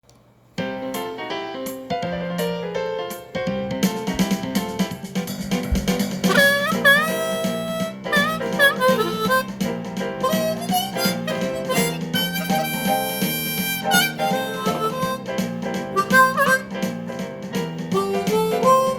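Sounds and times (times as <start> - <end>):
repeating backing riff: 3.6 - 18.9
harmonica bending notes: 4.2 - 18.9.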